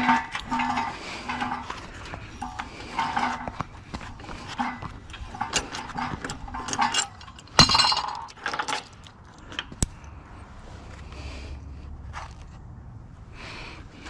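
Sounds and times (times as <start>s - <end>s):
hand tools clinking on metal: 0.0s - 10.1s
loud ringing metal clank: 4.6s - 8.4s.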